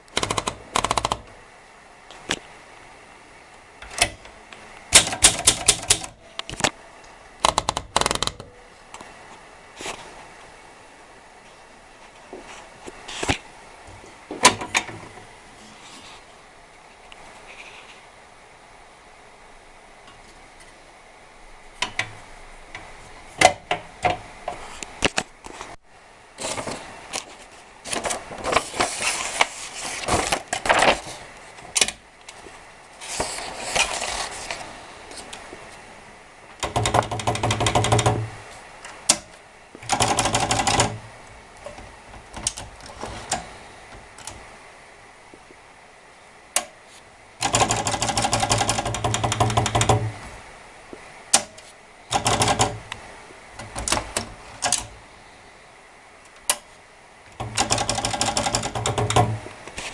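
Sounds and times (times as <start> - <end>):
manual typewriter typing: 0.0 - 1.3, 4.9 - 6.6, 7.4 - 8.6, 36.6 - 38.4, 39.8 - 41.0, 47.4 - 50.1, 52.1 - 52.9, 53.6 - 54.9, 57.4 - 59.4.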